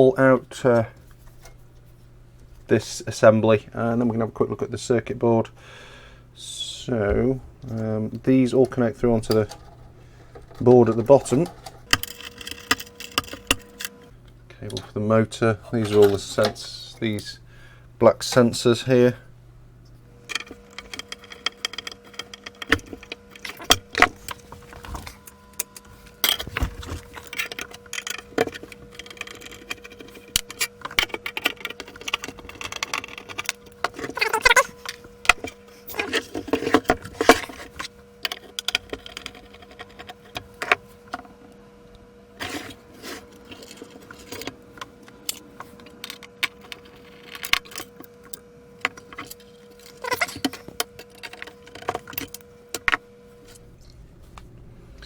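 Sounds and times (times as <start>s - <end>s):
faint steady hum: 0.0s - 55.0s
metal parts and tools clinking: 9.2s - 14.0s, 20.3s - 40.8s, 42.4s - 53.0s
short squeaks: 34.0s - 34.8s.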